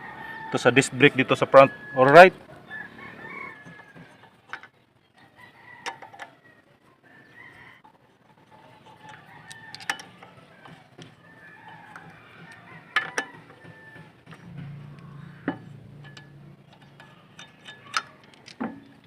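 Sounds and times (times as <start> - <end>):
rooster crowing: 0.0 - 4.2, 9.1 - 17.1
chickens clucking: 1.2 - 19.0
sharp clicks and knocks: 11.8 - 19.0.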